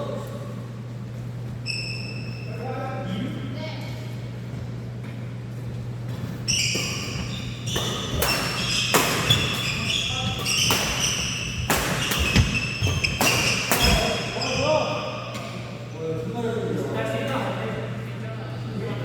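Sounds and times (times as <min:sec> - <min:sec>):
steady low hum: 0:00.0 - 0:19.0
shoe squeaks on court floor: 0:01.6 - 0:02.6, 0:06.1 - 0:15.6
rackets striking shuttlecock: 0:06.7 - 0:14.3.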